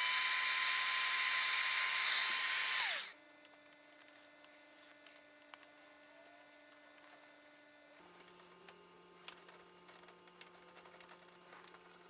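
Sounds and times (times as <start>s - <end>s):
power tool whining: 0.0s - 3.2s.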